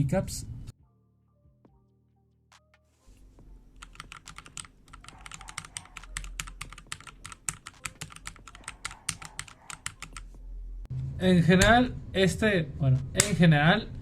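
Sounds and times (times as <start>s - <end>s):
fast typing on mechanical keyboard: 3.8s - 10.3s.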